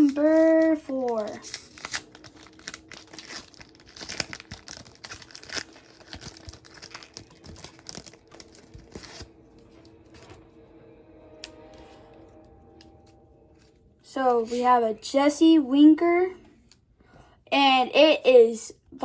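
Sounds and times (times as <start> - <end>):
foil wrapper tearing and crinkling: 0.0 - 9.9.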